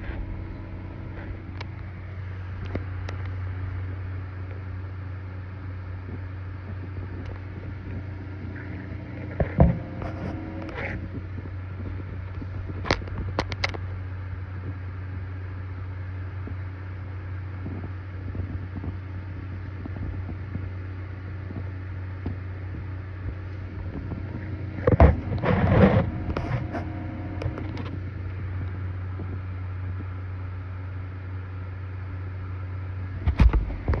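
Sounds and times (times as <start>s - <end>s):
faint steady tones: 0.0s - 33.2s
computer humming: 0.0s - 34.0s
knocks and rustling: 9.2s - 10.8s.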